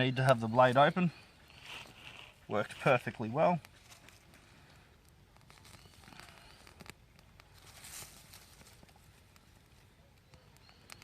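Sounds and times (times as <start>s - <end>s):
small fire crackling: 3.0s - 11.0s.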